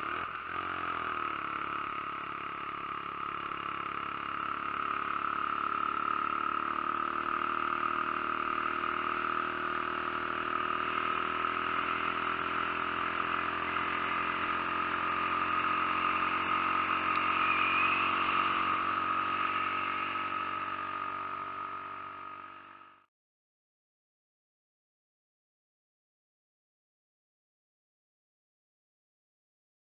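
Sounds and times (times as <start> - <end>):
moped engine running: 0.0 - 23.1.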